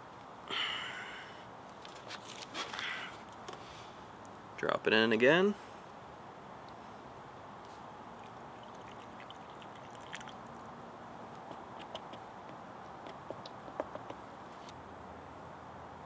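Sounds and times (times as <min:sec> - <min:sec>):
liquid trickling into tire: 0:08.2 - 0:10.7.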